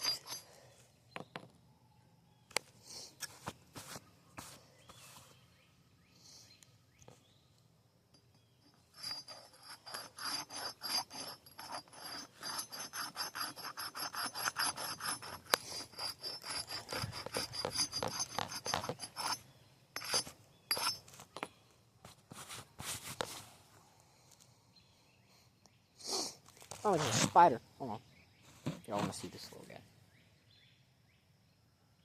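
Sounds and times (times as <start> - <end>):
axe scraping on concrete: 0.0 - 0.6, 8.4 - 19.4, 20.0 - 21.6.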